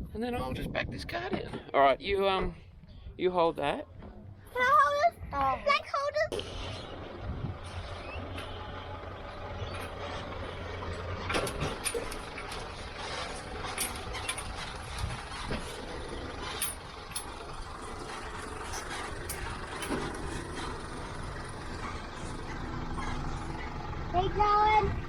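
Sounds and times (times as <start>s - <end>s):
car engine running: 6.3s - 25.0s
sharp clicks and knocks: 10.9s - 20.8s.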